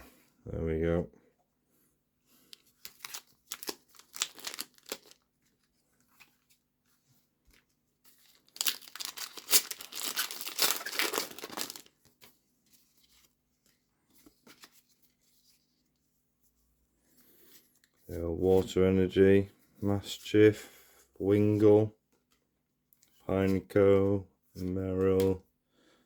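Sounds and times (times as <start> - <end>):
foil wrapper crinkling and tearing: 2.8 - 5.3, 8.2 - 12.1.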